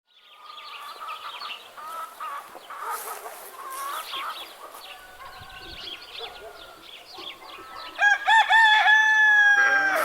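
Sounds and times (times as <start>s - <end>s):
chickens clucking: 0.4s - 8.2s.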